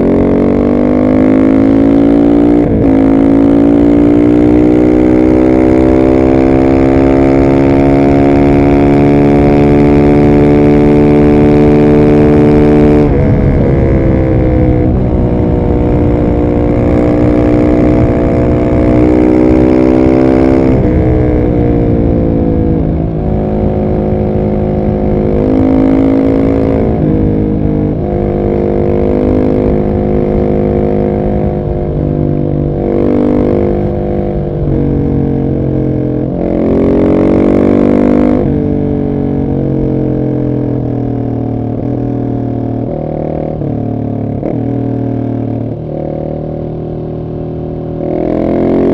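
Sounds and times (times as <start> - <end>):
motorcycle engine revving under load: 0.0 - 48.9.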